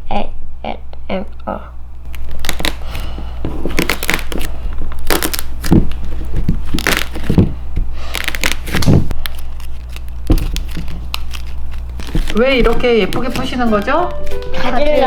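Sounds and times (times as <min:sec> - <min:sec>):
foam clay crunching: 0:02.1 - 0:15.0.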